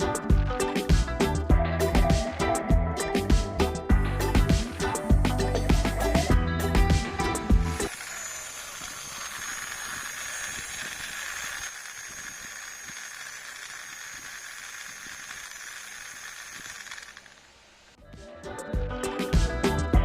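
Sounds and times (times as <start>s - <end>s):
small gear motor whirring: 7.7s - 18.0s.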